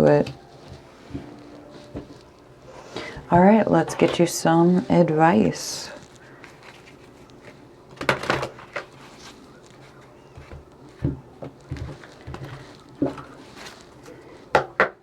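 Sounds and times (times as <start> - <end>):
cards shuffling: 6.0 - 14.1.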